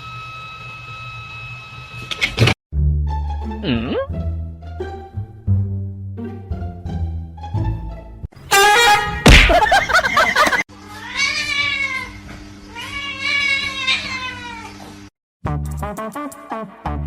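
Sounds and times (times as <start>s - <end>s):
cat meowing loudly: 10.9s - 14.8s.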